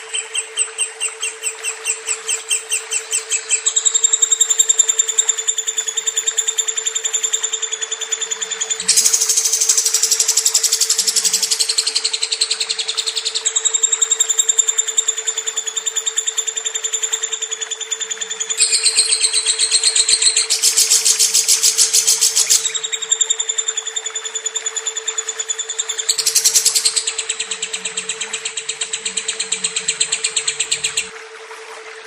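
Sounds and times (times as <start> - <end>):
steady hum: 0.0 - 32.0
lovebird chattering trill: 8.7 - 13.5, 18.6 - 23.0, 25.7 - 31.1.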